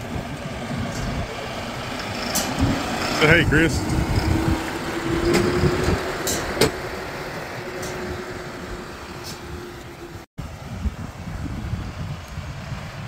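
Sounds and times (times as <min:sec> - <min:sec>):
tractor engine running: 0:00.0 - 0:13.0
sharp metal clanks: 0:05.2 - 0:06.8.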